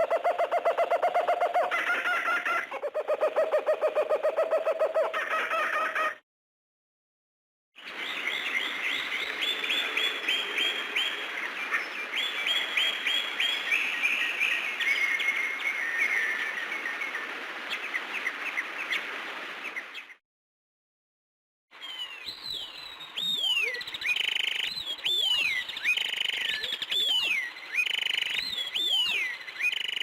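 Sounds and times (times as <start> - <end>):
birds chirping: 21.8 - 30.0.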